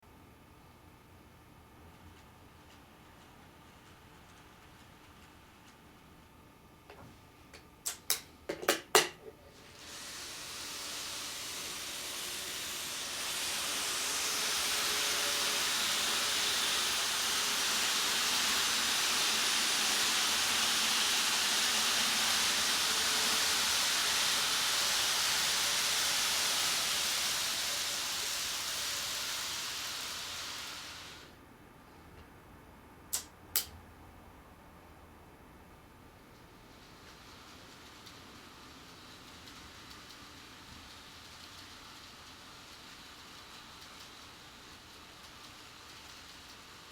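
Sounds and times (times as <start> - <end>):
model train running on track: 2.6 - 5.8, 9.6 - 31.4, 36.6 - 46.9
sharp clicks: 33.1 - 33.8.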